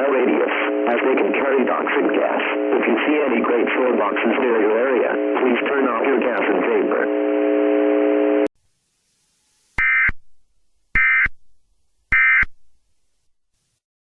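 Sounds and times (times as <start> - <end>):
warbling modem-like data bursts: 9.8 - 10.2, 11.0 - 11.4.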